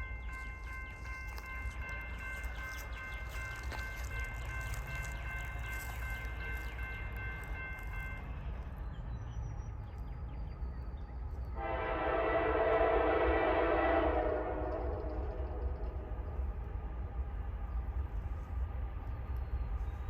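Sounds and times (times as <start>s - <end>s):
bell-like ringing: 0.0s - 8.6s
locomotive air horn: 11.6s - 15.5s.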